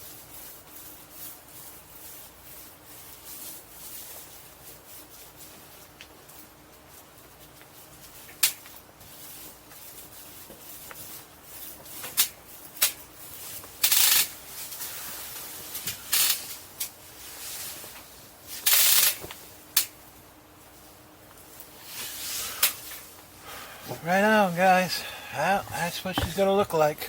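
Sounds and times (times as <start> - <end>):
scratchy paintbrush strokes: 24.0 - 27.0.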